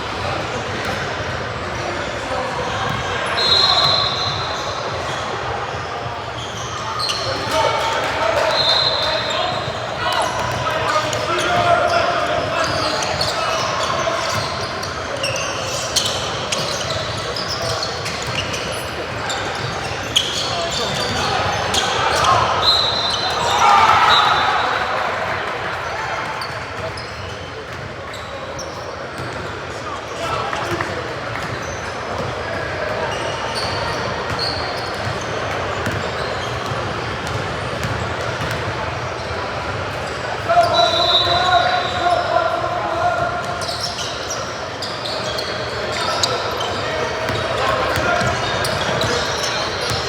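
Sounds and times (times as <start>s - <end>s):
crowd chatter in echoing hall: 0.0s - 50.0s
shoe squeaks: 2.7s - 5.3s, 6.2s - 24.6s, 26.4s - 38.6s, 40.0s - 50.0s
basketball bouncing on court: 34.3s - 38.8s, 46.2s - 50.0s.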